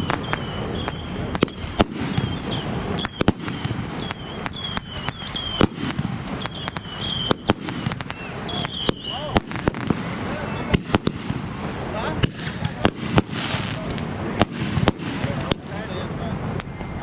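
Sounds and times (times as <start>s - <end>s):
fireworks bangs and cracks: 0.0s - 17.0s
fireworks whistles: 0.0s - 17.0s.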